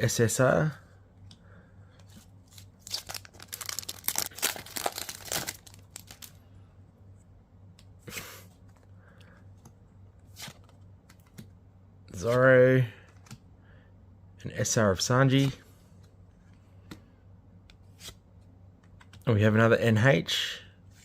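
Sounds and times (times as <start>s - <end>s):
cards rustling: 2.0s - 6.4s
wrapper tearing and crinkling: 2.5s - 6.3s.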